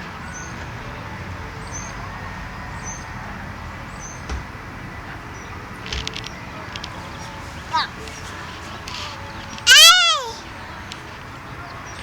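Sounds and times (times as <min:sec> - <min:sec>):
small bird chirping: 0:07.0 - 0:10.4.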